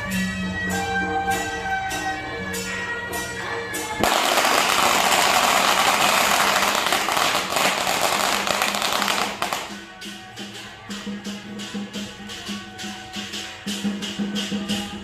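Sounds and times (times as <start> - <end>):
firecrackers crackling: 4.0 - 9.9.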